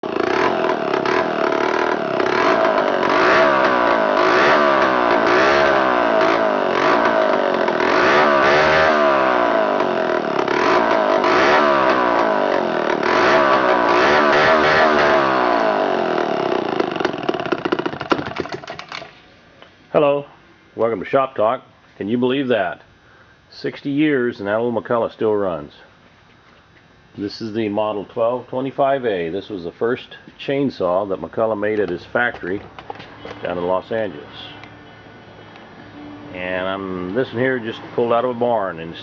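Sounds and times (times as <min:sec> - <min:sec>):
two-stroke chainsaw running: 0:00.0 - 0:19.1.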